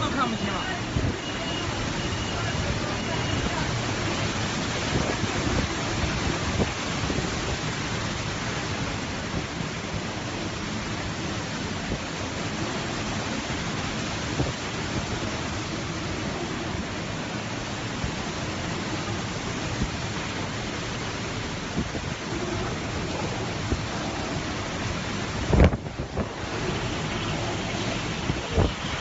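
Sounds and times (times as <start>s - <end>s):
strong wind and driving rain: 0.0s - 29.0s
wind rumbling against microphone: 0.0s - 29.0s.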